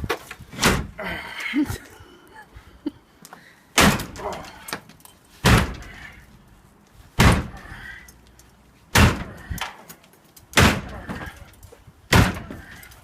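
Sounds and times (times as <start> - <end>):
sledgehammer blows: 3.8 - 4.7, 5.4 - 6.3, 7.1 - 7.9, 8.9 - 9.7, 10.6 - 13.0.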